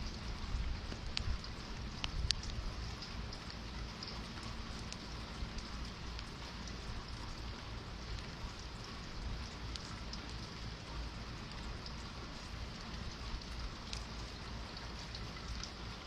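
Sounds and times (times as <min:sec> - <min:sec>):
steady rain falling: 0:00.0 - 0:16.0.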